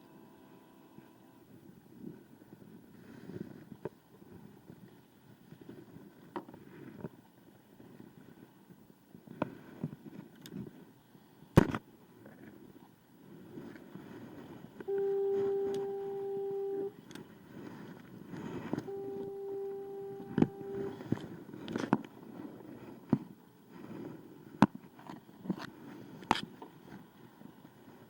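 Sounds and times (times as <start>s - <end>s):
steady single-pitch tone: 0.0s - 1.4s, 14.8s - 17.0s, 18.8s - 21.2s
wind and water rushing: 0.0s - 28.0s.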